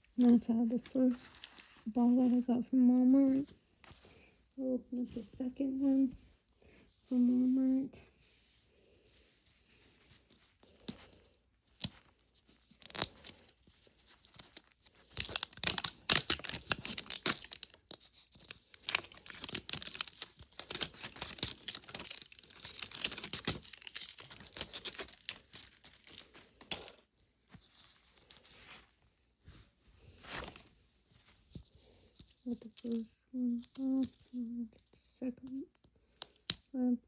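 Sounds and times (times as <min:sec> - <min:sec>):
wrapper tearing and crinkling: 0:00.2 - 0:02.0, 0:11.8 - 0:27.0.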